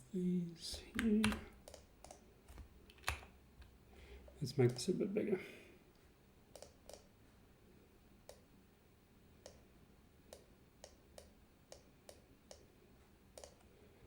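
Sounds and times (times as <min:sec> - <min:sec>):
computer mouse clicks: 0:00.7 - 0:03.7, 0:06.5 - 0:07.1, 0:08.2 - 0:08.5, 0:09.4 - 0:09.6, 0:10.3 - 0:12.7, 0:13.3 - 0:13.7.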